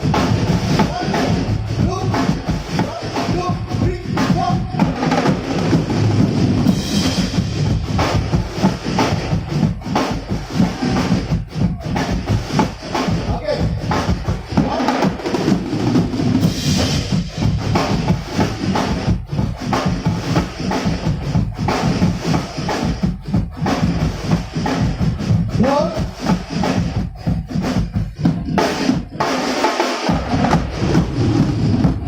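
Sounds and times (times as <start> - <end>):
band music over loudspeakers: 0.0 - 5.0
fast heavy drumming: 0.0 - 32.0.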